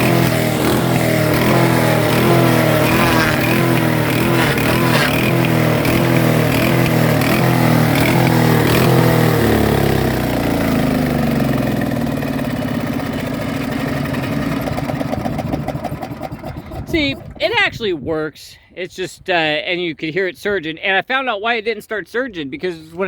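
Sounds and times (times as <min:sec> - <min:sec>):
wood chipper engine surging: 0:00.0 - 0:17.4.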